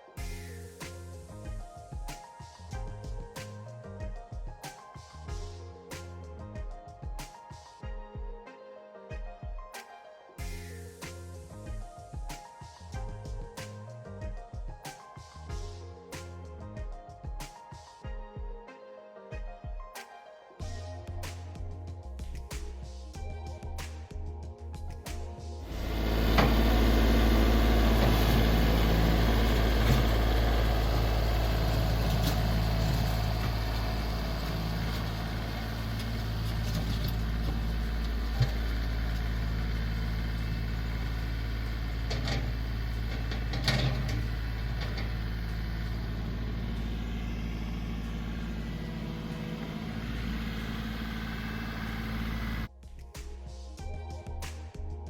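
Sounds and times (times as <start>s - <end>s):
tractor diesel engine running: 25.6s - 52.7s.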